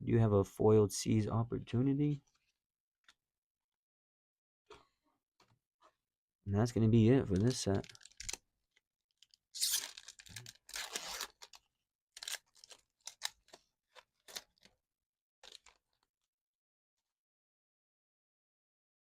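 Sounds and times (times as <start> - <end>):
foil wrapper crinkling: 7.3 - 8.4, 9.2 - 14.8, 15.4 - 16.1
foil wrapper tearing: 7.4 - 8.4, 9.2 - 11.6, 12.2 - 14.8, 15.4 - 15.8.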